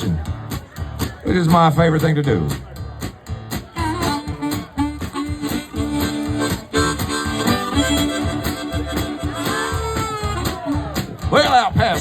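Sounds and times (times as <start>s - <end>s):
guitar: 0.0s - 12.0s
steady beat: 0.0s - 12.0s
harmonica holding a note: 3.8s - 11.1s.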